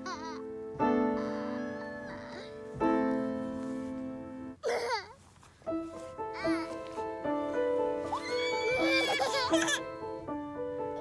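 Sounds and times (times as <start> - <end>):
small child squealing: 8.1 - 9.8.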